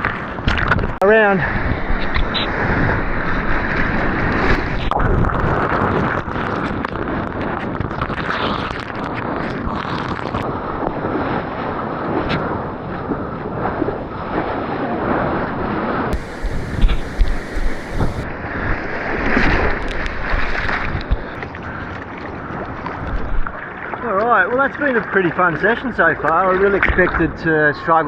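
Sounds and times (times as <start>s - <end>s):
wind buffeting microphone: 16.2s - 23.6s
ocean water rushing and splashing: 16.2s - 24.3s.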